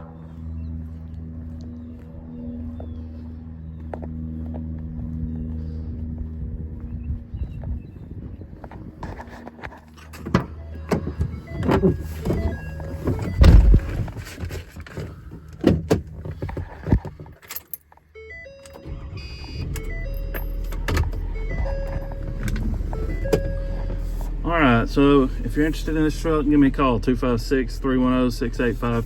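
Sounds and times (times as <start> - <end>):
engine humming: 0.0 - 29.0
sharp knocks and clunks: 10.2 - 17.4.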